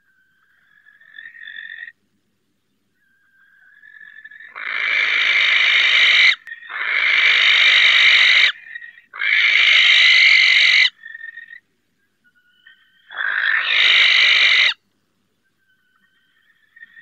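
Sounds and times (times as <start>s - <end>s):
owl screeching: 3.0s - 11.6s, 12.3s - 14.8s.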